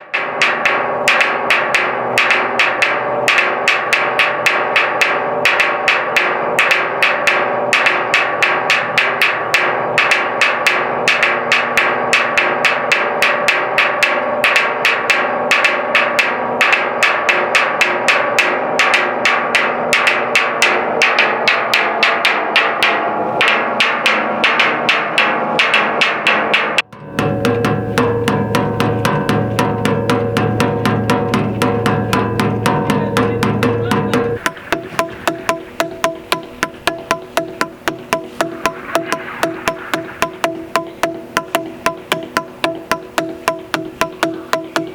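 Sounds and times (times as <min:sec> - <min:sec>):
rapid percussive knocking: 0:00.0 - 0:44.9
sustained tones: 0:26.8 - 0:44.9.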